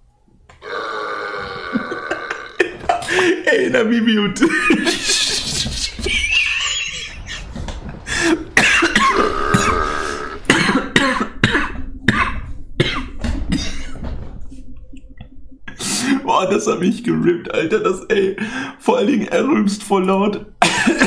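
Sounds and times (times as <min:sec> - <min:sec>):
man burping loudly: 0:00.6 - 0:03.6, 0:08.3 - 0:13.9
coughing laughter: 0:00.6 - 0:03.7, 0:04.4 - 0:14.0, 0:20.6 - 0:21.0.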